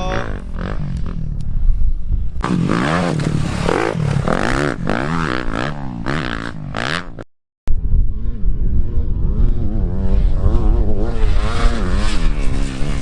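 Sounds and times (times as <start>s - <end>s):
dirt bike engine revving: 0.0s - 1.6s, 2.4s - 7.3s, 7.9s - 13.0s.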